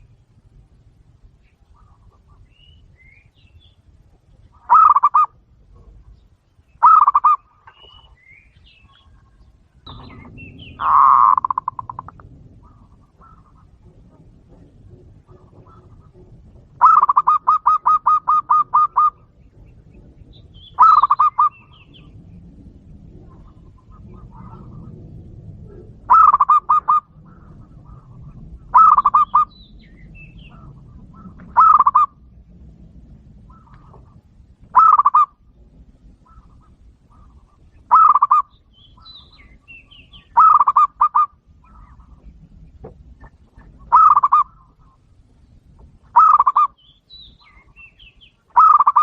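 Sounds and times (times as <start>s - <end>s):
doves cooing: 0.0s - 49.0s
faint high bird chirps: 4.5s - 12.1s, 36.3s - 42.9s, 46.2s - 49.0s.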